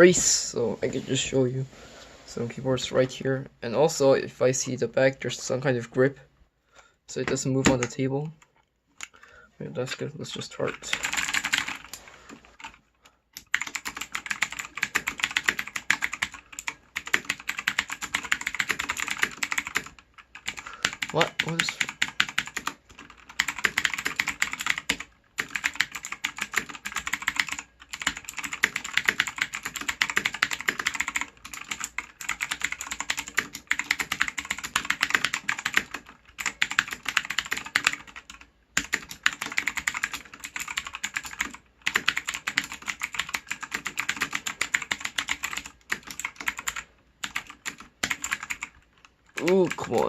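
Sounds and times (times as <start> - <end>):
mechanical keyboard typing: 7.3 - 8.0, 10.7 - 12.8, 13.4 - 50.0.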